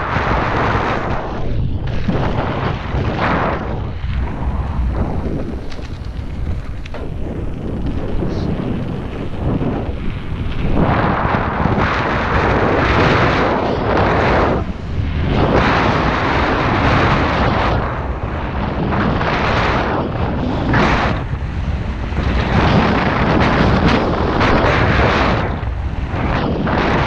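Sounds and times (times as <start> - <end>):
steady low rumble: 0.0 - 27.0
wind buffeting microphone: 0.0 - 27.0.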